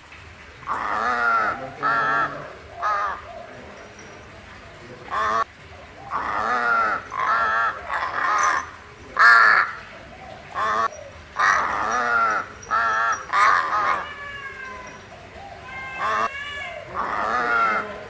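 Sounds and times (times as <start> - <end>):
crow cawing: 0.7 - 3.3, 5.1 - 5.5, 6.1 - 9.8, 10.6 - 15.0, 15.6 - 18.0.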